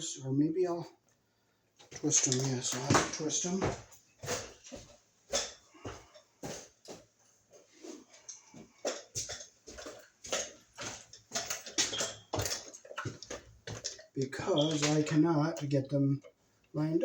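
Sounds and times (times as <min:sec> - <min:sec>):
hands twisting stiff wires: 0:08.1 - 0:15.7.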